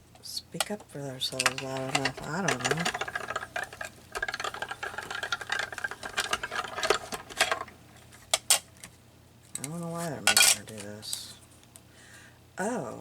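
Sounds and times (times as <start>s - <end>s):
die-cutting machine rattling: 1.3s - 7.8s.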